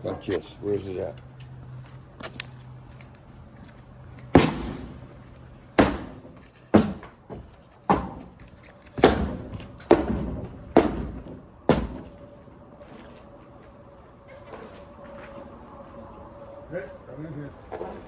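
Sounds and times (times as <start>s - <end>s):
heavy hammer blows on wood: 4.3s - 5.2s, 5.8s - 13.2s.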